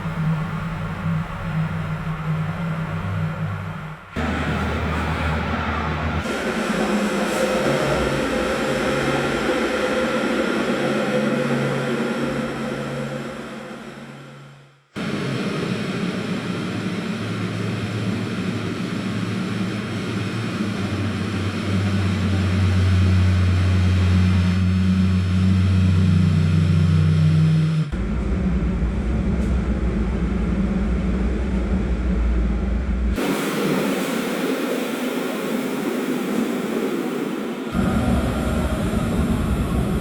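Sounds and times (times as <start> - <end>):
machinery hum: 0.0 - 40.0
deep low rumble: 16.8 - 33.2, 37.8 - 40.0.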